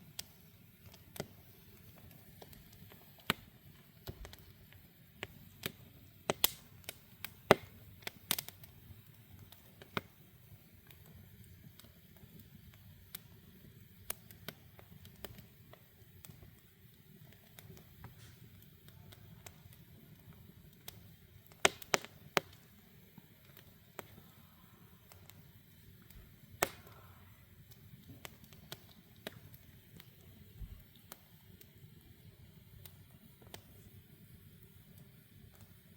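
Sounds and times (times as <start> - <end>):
campfire crackling: 0.0 - 35.9
sharp fire pops: 1.9 - 4.5, 5.2 - 10.1, 17.3 - 22.8, 26.1 - 31.7.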